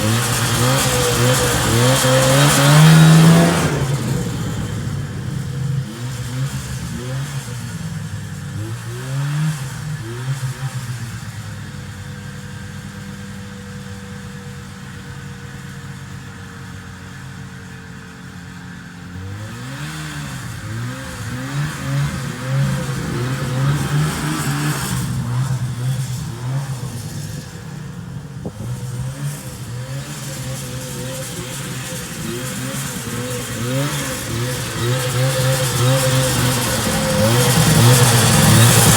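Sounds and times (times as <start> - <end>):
snowmobile engine revving: 0.0 - 13.4, 19.0 - 38.9.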